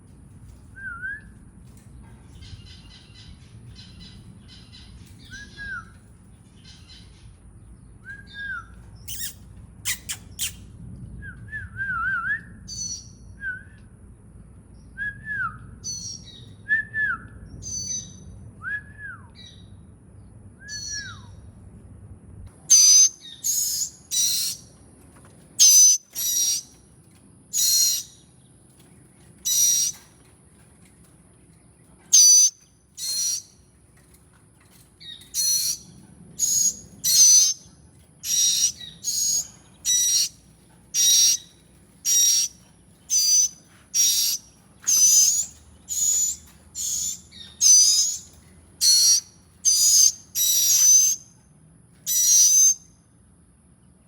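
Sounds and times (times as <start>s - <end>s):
nestling birds raspy calls: 22.7s - 24.7s, 25.6s - 26.8s, 27.5s - 28.2s, 29.3s - 30.1s, 32.1s - 33.5s, 35.0s - 51.3s, 52.0s - 52.8s.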